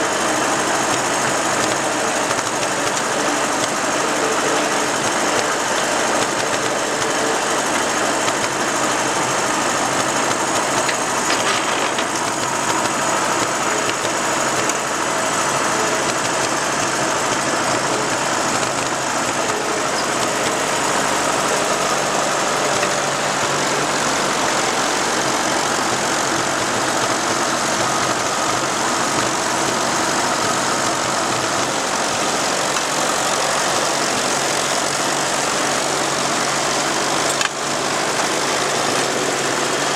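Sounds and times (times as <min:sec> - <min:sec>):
tractor engines running: 0:00.0 - 0:39.9.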